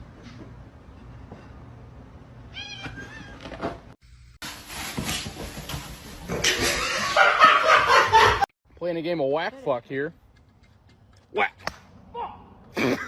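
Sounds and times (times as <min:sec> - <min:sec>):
rustling noise: 0:04.4 - 0:06.8.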